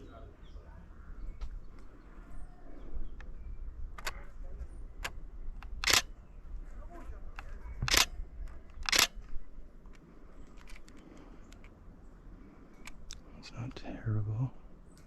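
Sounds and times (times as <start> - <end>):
camera shutter clicks: 5.0 - 6.1, 7.8 - 8.1, 8.7 - 9.2.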